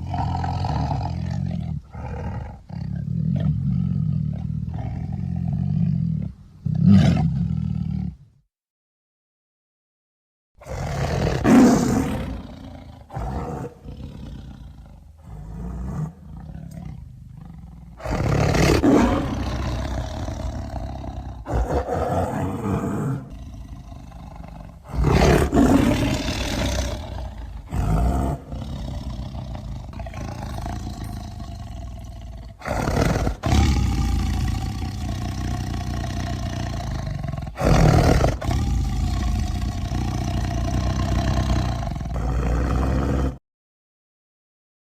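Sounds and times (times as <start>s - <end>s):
monster growling roars: 17.4s - 43.4s.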